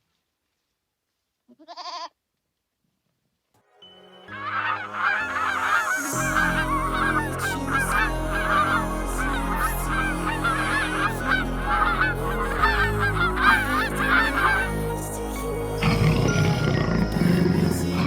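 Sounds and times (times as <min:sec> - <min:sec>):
background music with low notes: 0:03.6 - 0:18.0
birds honking calls: 0:04.4 - 0:14.6.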